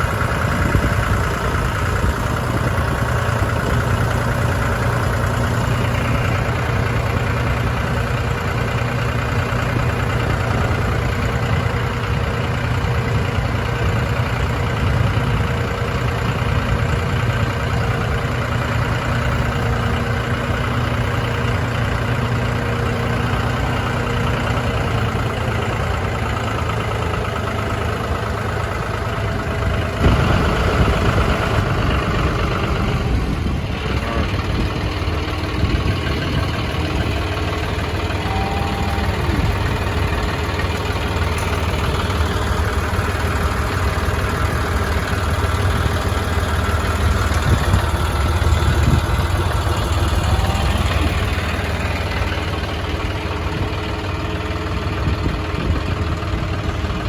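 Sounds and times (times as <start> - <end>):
diesel tractor engine running: 0.0 - 57.0.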